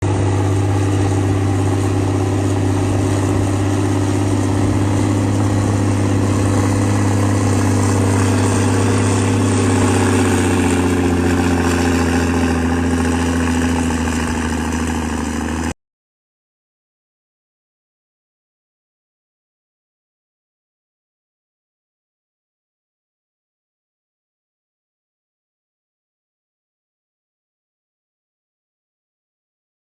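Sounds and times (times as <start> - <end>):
heavy machine engine running: 0.0 - 15.8.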